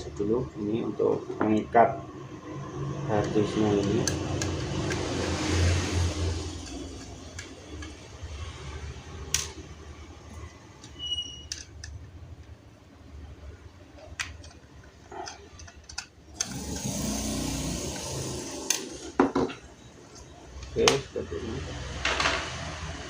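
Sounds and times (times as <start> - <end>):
screwdriver and small parts clicking: 3.2 - 5.2, 6.4 - 8.0, 10.8 - 12.6, 13.9 - 16.9.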